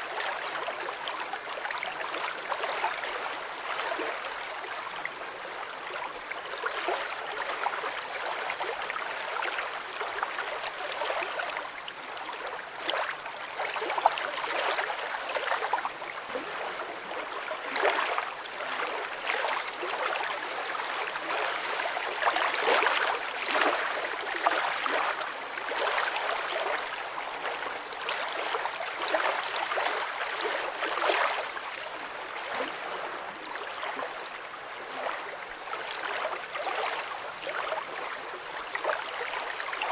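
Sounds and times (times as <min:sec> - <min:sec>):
small water splashes: 0:17.3 - 0:39.9.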